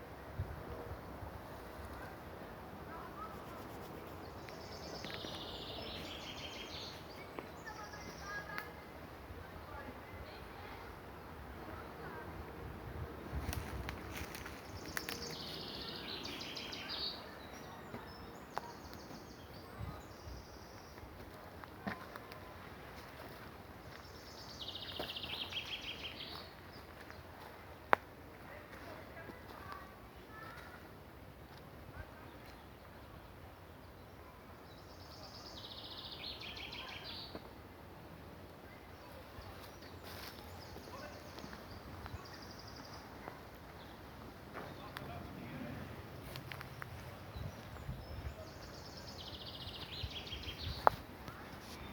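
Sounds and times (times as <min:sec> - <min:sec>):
faint background noise: 0:00.0 - 0:51.9
small birds chirping: 0:02.9 - 0:08.9, 0:13.5 - 0:21.4, 0:23.4 - 0:27.4, 0:33.9 - 0:37.5, 0:38.6 - 0:45.5, 0:46.1 - 0:51.9
songbird trill: 0:03.2 - 0:08.8, 0:14.3 - 0:21.2, 0:23.9 - 0:27.1, 0:34.0 - 0:37.4, 0:46.2 - 0:51.9.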